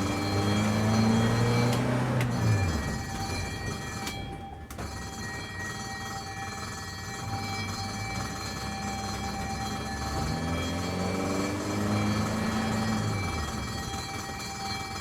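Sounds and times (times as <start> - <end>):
ambulance engine revving and idling: 0.0 - 15.0.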